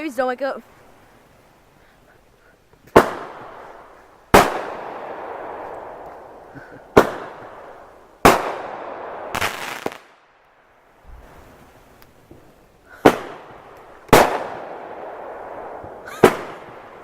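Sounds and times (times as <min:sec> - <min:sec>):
fireworks banging: 0:02.8 - 0:10.2, 0:12.2 - 0:17.0
fireworks popping: 0:02.8 - 0:10.2, 0:11.0 - 0:17.0.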